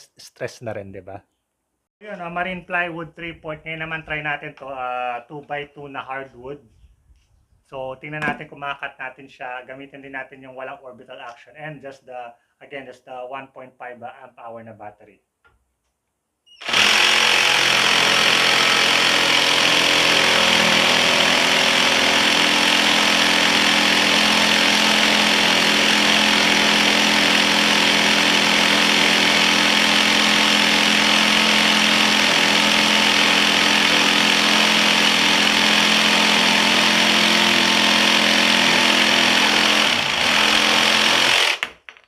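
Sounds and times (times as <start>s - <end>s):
jigsaw sawing through wood: 16.6s - 41.8s.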